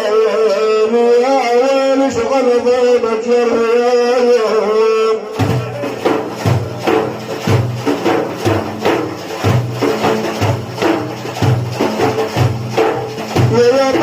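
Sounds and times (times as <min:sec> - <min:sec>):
frame drums with jingles: 0:05.4 - 0:14.0.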